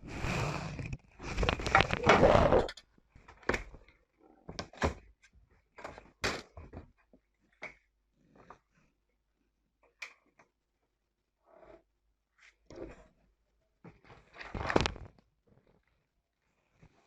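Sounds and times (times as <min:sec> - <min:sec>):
rustling scrape: 0:00.0 - 0:02.7.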